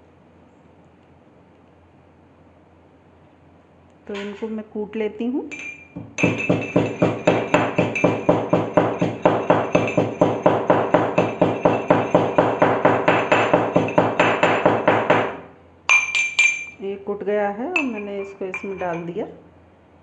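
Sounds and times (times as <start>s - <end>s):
pestle pounding in a mortar: 5.9s - 16.7s.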